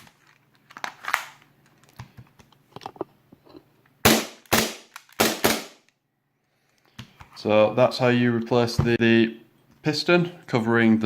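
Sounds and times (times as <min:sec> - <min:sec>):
airsoft pistol shots: 0:04.1 - 0:05.8.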